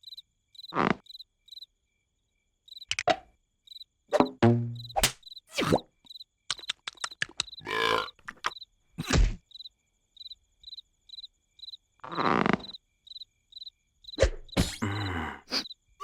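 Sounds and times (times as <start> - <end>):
cricket chirps: 0.0 - 16.0
thumps: 4.2 - 5.4.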